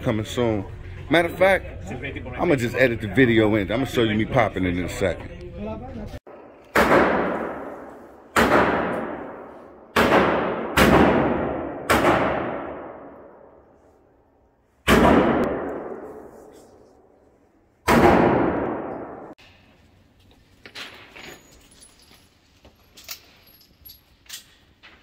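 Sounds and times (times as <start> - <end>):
revolver shots echoing: 6.7 - 13.4, 14.8 - 16.3, 17.8 - 19.4.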